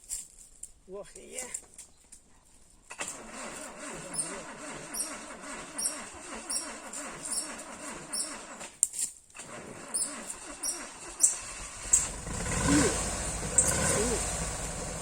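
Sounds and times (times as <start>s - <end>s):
chainsaw engine running: 9.4s - 15.0s.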